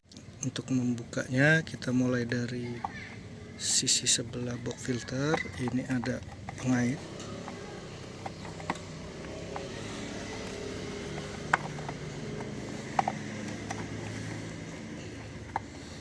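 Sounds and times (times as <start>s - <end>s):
engine running steadily: 5.9s - 16.0s.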